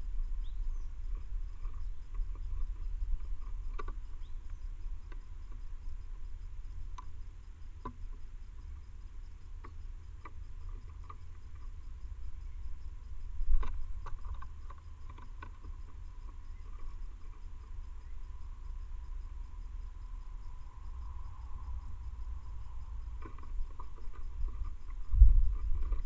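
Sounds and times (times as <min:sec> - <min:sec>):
steady low rumble: 0:00.0 - 0:10.8, 0:11.4 - 0:26.0
faint bird chirps: 0:00.1 - 0:06.5, 0:10.7 - 0:13.0, 0:13.6 - 0:19.3.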